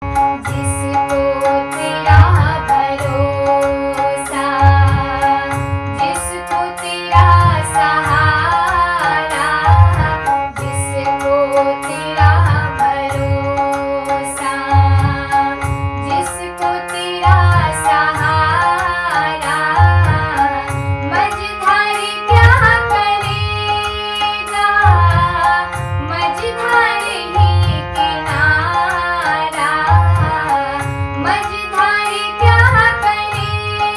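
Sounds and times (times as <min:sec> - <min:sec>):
tabla: 0:00.0 - 0:33.9
person singing devotional song: 0:00.1 - 0:33.9
steady drum beat: 0:04.5 - 0:06.0.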